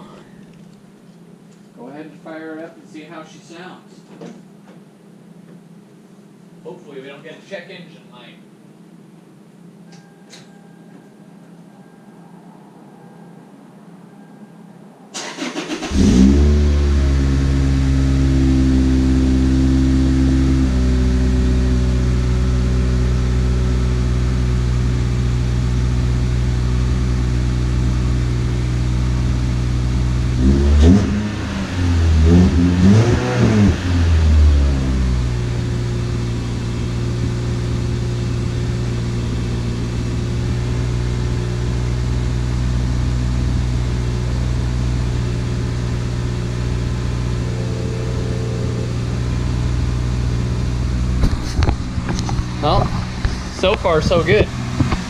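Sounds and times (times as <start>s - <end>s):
car engine idling and revving: 15.2s - 55.0s.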